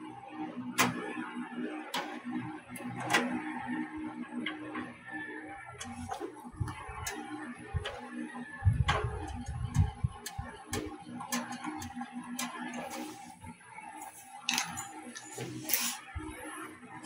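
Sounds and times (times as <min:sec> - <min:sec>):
dull rumbling handling noise: 0:07.7 - 0:12.0.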